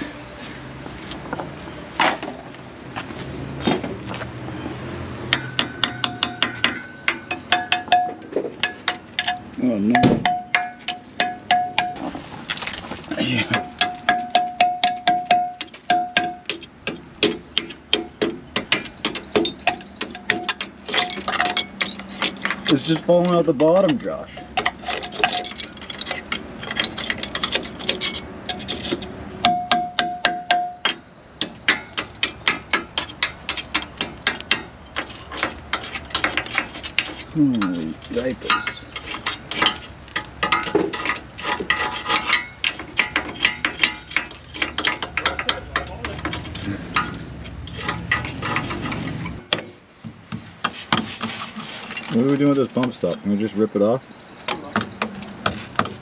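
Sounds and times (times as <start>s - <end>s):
sharp metallic clinks: 5.2s - 12.1s, 13.3s - 49.5s
hammer striking steel: 5.3s - 12.1s, 13.5s - 22.4s, 29.4s - 34.7s
metallic ring: 5.3s - 12.1s, 13.5s - 17.1s.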